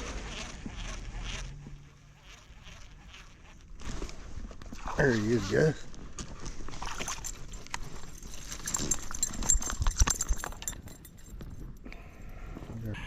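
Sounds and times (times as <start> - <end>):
clicks and clatter of handling fish: 3.8 - 12.0.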